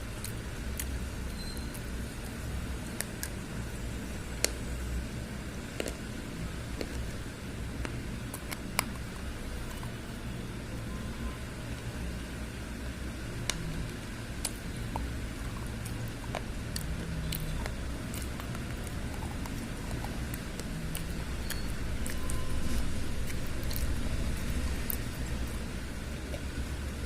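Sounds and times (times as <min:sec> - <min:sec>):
pencils being chewed crunching: 0:00.0 - 0:03.5, 0:05.7 - 0:07.2, 0:07.8 - 0:10.0, 0:13.4 - 0:27.0
steady low rumble: 0:11.4 - 0:27.0.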